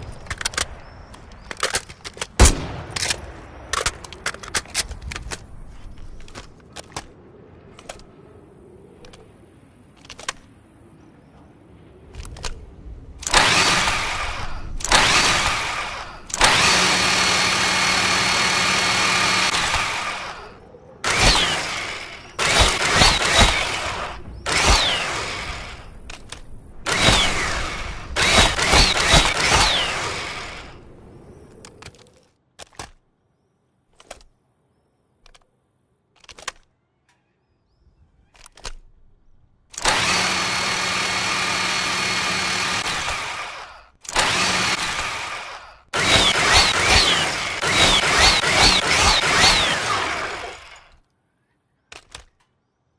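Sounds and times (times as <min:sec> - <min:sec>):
sharp clicks: 0:00.0 - 0:08.1, 0:13.2 - 0:30.8, 0:39.7 - 0:51.1, 0:51.9 - 0:52.6
chainsaw motor revving: 0:13.3 - 0:25.9, 0:26.9 - 0:30.8, 0:39.8 - 0:50.9.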